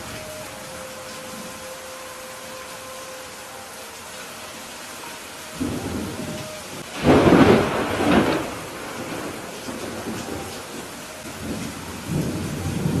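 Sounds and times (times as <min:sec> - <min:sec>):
steady rain: 0:00.0 - 0:13.0
thunder rumbling: 0:05.6 - 0:13.0.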